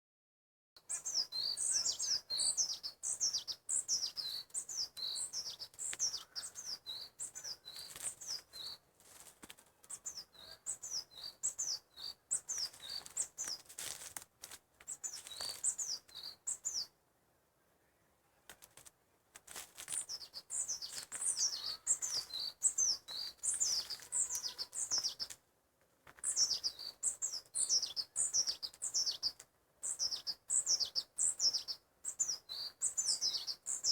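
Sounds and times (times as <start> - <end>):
songbird chirping: 0.8 - 14.0, 14.8 - 33.9.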